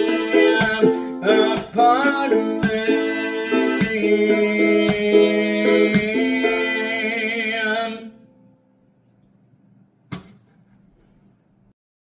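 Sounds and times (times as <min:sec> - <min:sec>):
ukulele chord ringing: 0:00.0 - 0:08.8.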